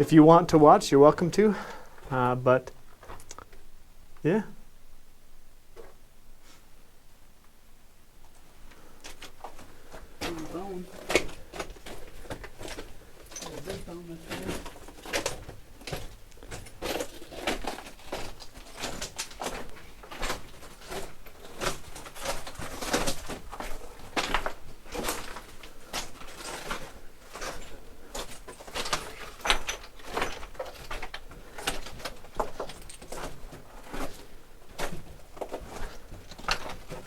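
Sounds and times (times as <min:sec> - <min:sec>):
footsteps crunching on rock rubble: 0:09.2 - 0:37.0.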